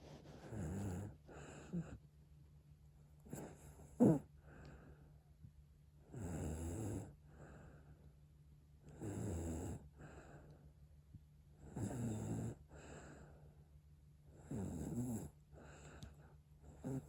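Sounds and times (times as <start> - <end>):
baby snoring: 0.5 - 1.2, 3.3 - 4.3.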